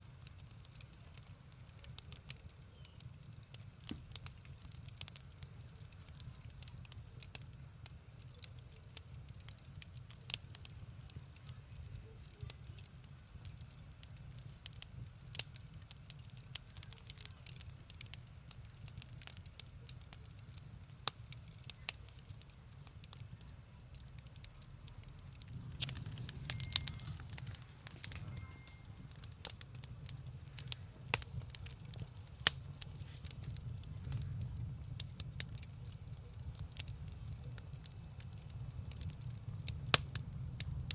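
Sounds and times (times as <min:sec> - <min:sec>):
wood fire crackling and popping: 0:00.0 - 0:40.9.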